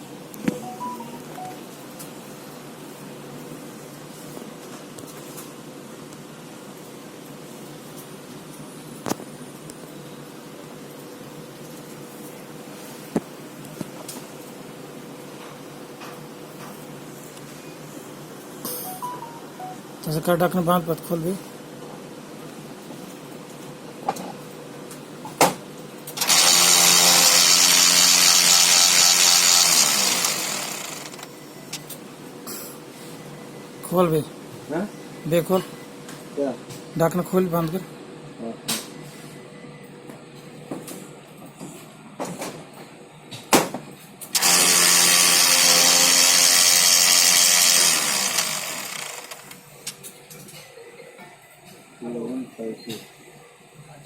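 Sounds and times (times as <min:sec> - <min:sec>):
copier drive grinding: 0:26.2 - 0:31.4, 0:44.3 - 0:49.6.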